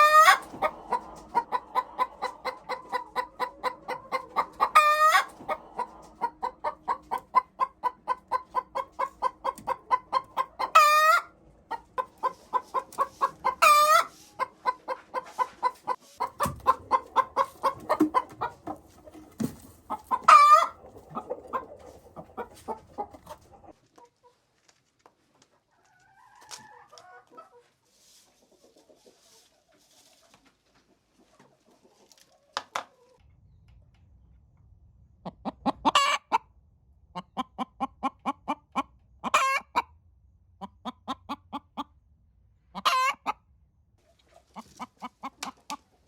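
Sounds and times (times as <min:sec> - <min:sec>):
hen clucking: 0:00.0 - 0:24.4, 0:35.2 - 0:36.5, 0:37.1 - 0:40.0, 0:40.6 - 0:41.9, 0:42.7 - 0:43.4, 0:44.0 - 0:46.0.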